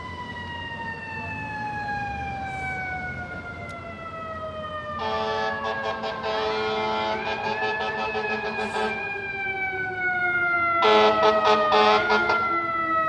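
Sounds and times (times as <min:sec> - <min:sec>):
fire engine siren winding down: 0:00.0 - 0:13.0
truck engine rumble: 0:00.0 - 0:13.0
loud air horn: 0:05.0 - 0:09.1, 0:10.8 - 0:12.5.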